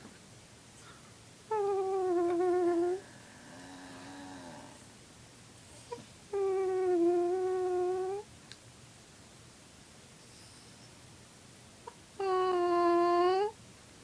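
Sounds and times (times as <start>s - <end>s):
dog howl-whining: 12.2s - 13.6s.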